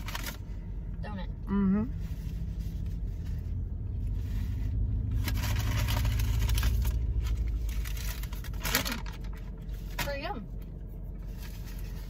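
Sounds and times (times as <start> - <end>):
car engine idling: 0.0 - 12.0
wrapper rustling: 5.1 - 10.1.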